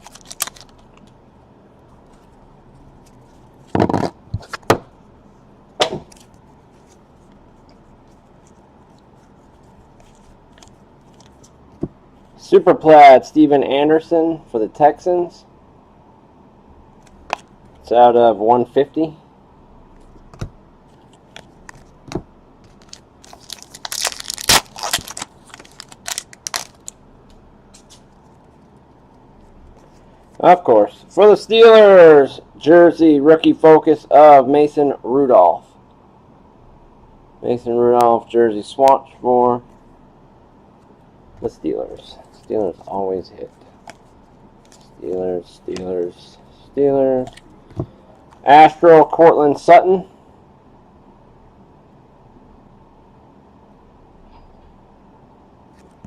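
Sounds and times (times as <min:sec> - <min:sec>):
card pack wrapper tearing: 0:00.0 - 0:01.1, 0:22.7 - 0:27.0.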